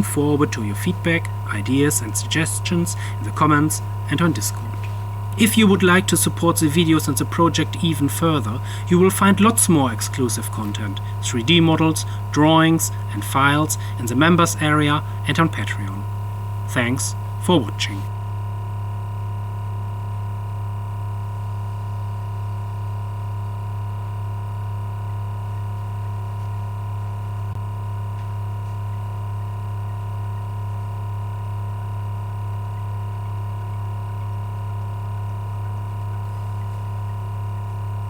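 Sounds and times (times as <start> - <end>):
engine low hum: 0.0 - 18.1.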